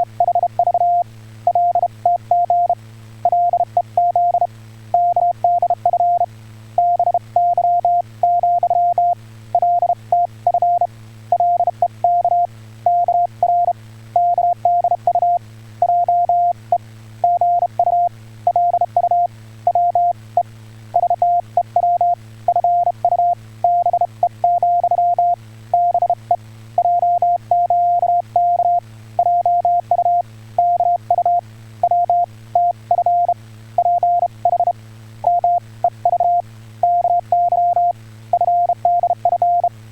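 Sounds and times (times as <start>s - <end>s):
morse code tone: 21.0s - 26.2s, 26.8s - 34.7s, 35.3s - 39.7s.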